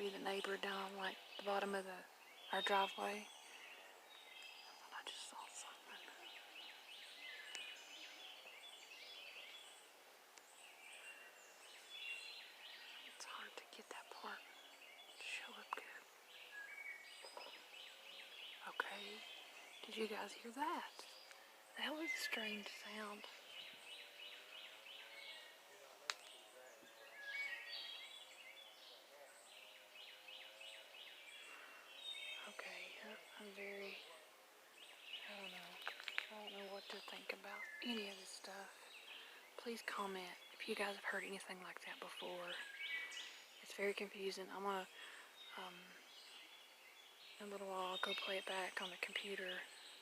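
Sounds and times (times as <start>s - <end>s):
birdsong chirping: 0.0s - 50.0s
faint steady hum: 0.0s - 50.0s.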